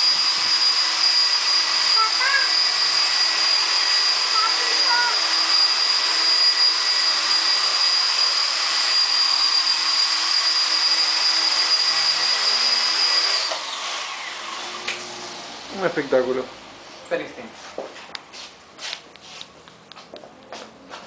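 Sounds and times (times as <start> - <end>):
rc helicopter motor whine: 0.0 - 15.9.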